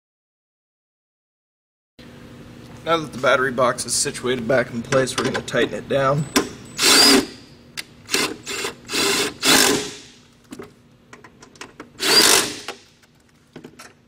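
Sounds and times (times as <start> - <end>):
power driver running: 6.7 - 7.4, 12.0 - 12.9.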